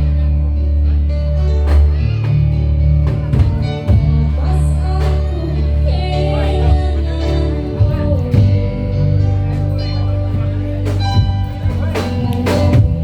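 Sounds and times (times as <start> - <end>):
ensemble with heavy bass: 0.0 - 13.0
percussion strikes: 6.8 - 13.0.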